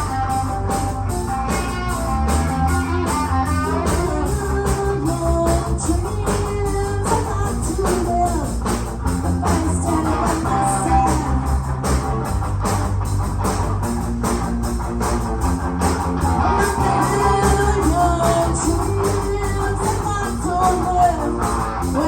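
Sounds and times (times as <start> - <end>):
electric guitar: 0.0 - 22.0
live rock band playing: 0.0 - 22.0.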